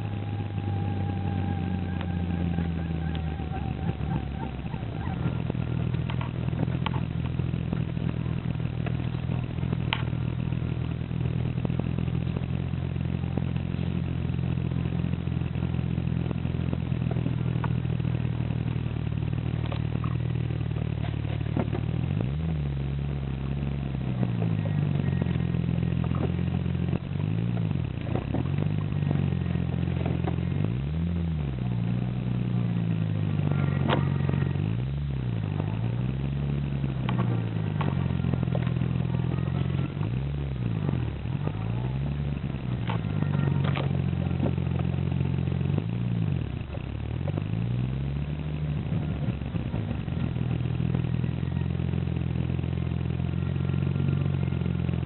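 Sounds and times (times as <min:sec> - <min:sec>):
car engine and road drone: 0:00.0 - 0:55.0.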